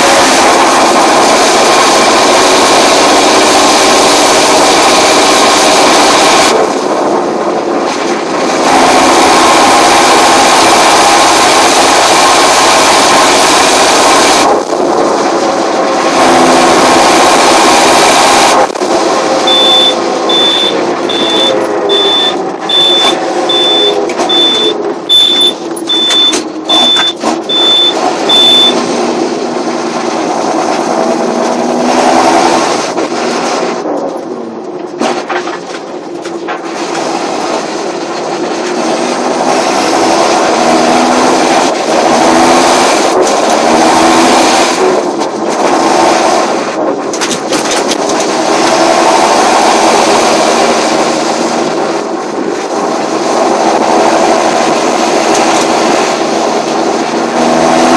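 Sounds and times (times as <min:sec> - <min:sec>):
tractor diesel engine running: 0:00.0 - 0:57.9
turbocharger whistling: 0:19.3 - 0:29.0
high beeping: 0:19.4 - 0:28.8.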